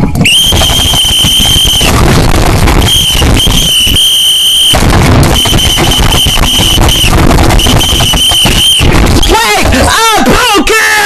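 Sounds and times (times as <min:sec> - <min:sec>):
distorted crackling noise: 0:00.0 - 0:10.7
high steady whistling tone: 0:00.2 - 0:02.0, 0:02.8 - 0:09.4.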